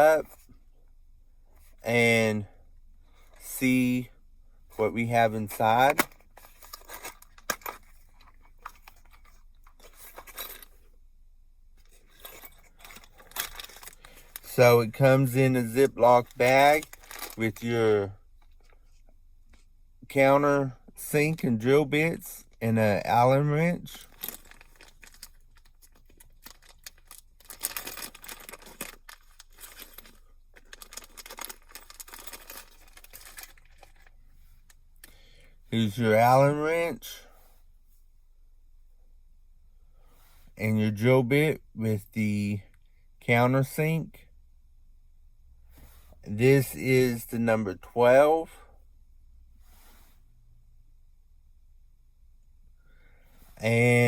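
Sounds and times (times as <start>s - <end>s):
plastic bag rustling: 23.9s - 34.6s.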